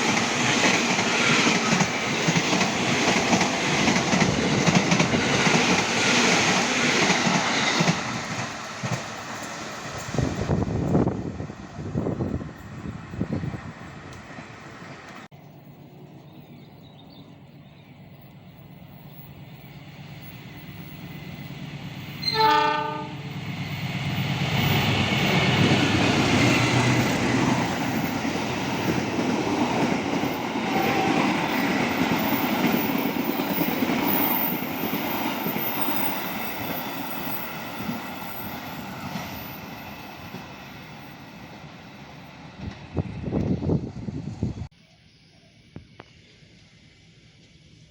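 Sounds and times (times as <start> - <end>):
train passing at speed: 0.0 - 44.7
train horn blast: 22.2 - 23.3, 30.6 - 31.4.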